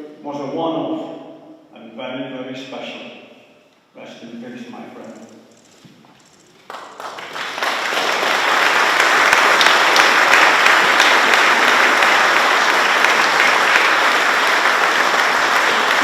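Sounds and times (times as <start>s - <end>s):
large crowd applauding: 6.6s - 16.0s.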